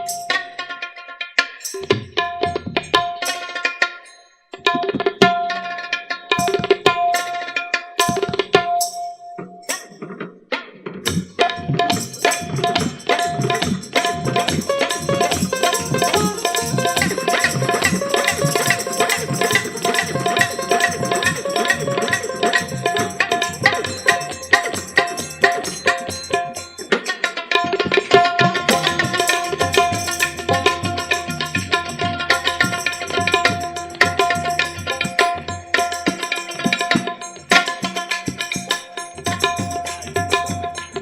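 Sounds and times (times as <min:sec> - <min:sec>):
hand drums fast rhythm: 0:06.3 - 0:08.9, 0:11.0 - 0:41.0.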